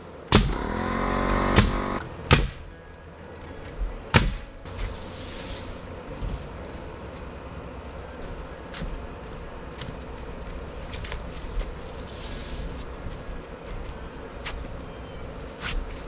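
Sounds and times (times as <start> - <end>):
construction knocks: 0.3 - 2.8, 4.1 - 5.0.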